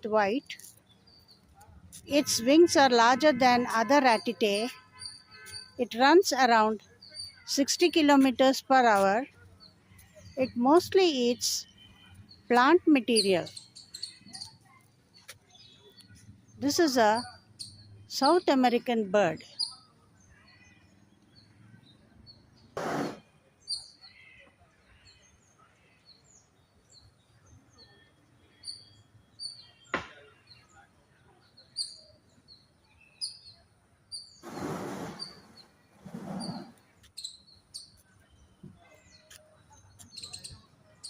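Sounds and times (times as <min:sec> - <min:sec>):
small birds chirping: 0:00.0 - 0:41.0.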